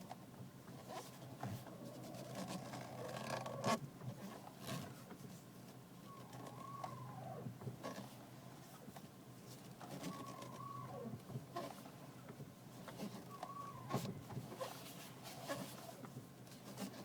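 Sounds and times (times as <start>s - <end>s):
steering creaking squeaks: 6.0s - 8.2s, 9.8s - 11.8s, 12.9s - 16.0s.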